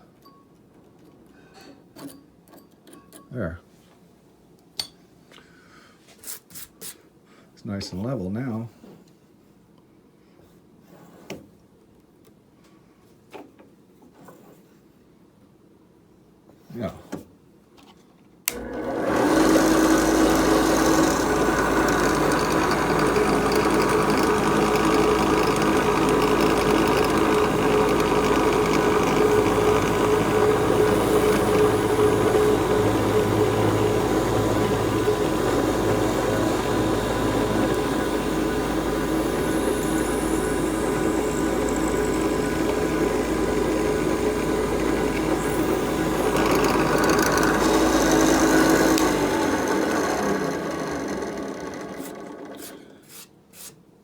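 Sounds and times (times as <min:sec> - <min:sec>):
electric drill drilling wood: 0:18.5 - 0:52.9.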